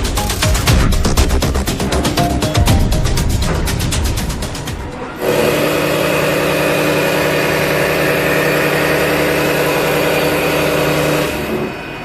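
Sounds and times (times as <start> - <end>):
milling machine cutting metal: 5.1 - 12.0.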